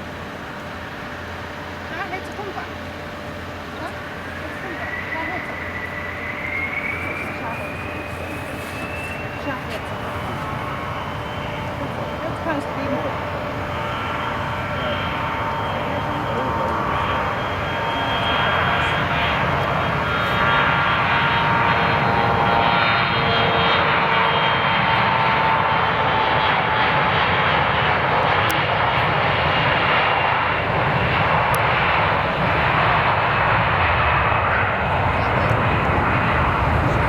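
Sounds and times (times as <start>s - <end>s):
faint high whine: 0.0s - 24.8s
jet engines roaring: 0.0s - 37.0s.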